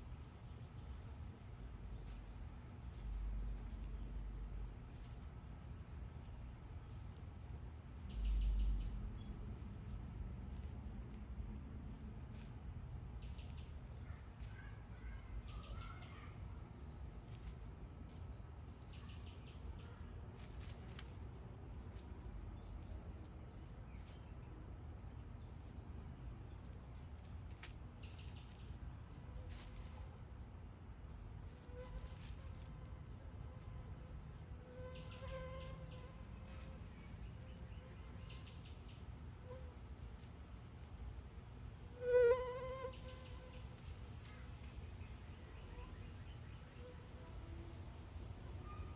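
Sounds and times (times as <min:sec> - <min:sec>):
small birds chirping: 0:00.0 - 0:41.0, 0:42.3 - 0:48.9
steady low rumble: 0:00.0 - 0:42.0.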